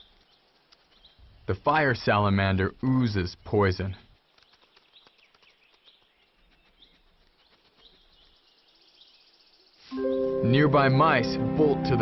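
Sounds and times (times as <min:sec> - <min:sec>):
small bird chirping: 0:00.0 - 0:01.5, 0:04.0 - 0:10.4.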